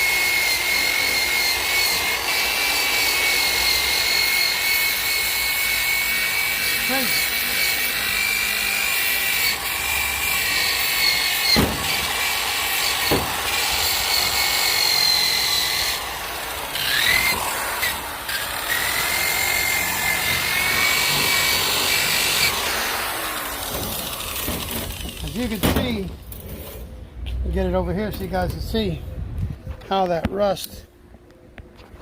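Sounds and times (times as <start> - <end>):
drill wire brush scrubbing metal: 0.0 - 25.6
sharp knocks: 13.1 - 13.4.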